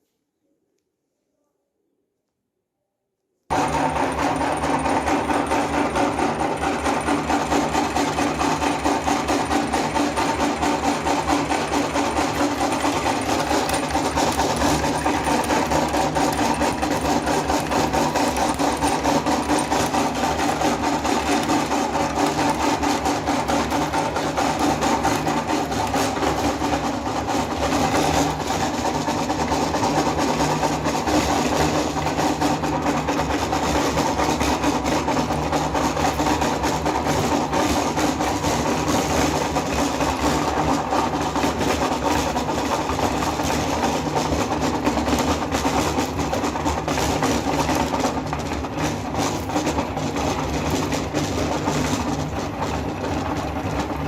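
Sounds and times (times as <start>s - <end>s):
electric meat grinder grinding candy: 3.5s - 54.0s.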